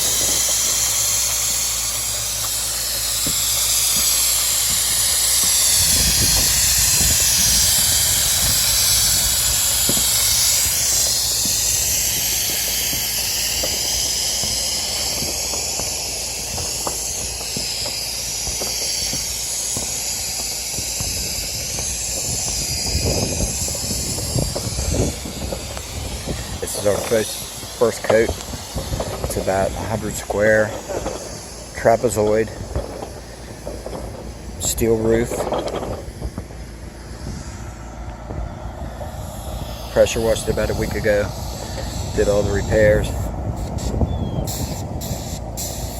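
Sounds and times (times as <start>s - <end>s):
low rumble: 0.0s - 45.9s
spray gun hissing: 0.0s - 45.9s.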